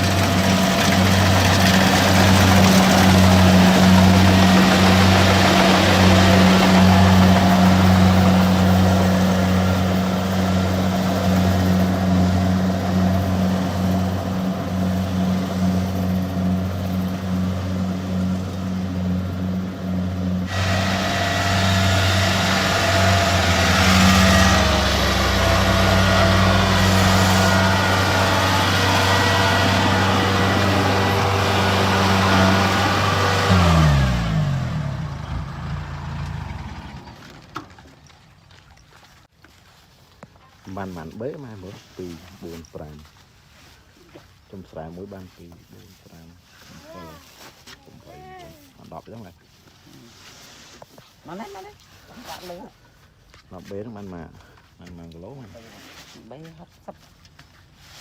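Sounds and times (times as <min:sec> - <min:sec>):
harvester engine running: 0:00.0 - 0:38.1.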